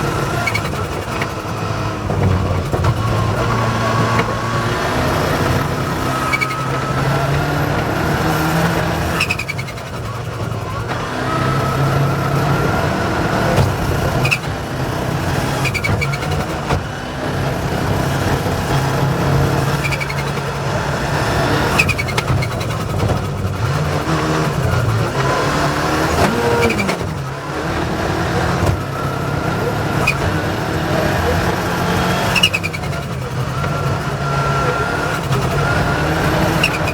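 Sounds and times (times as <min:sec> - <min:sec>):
rally car engine revving: 0:00.0 - 0:36.9.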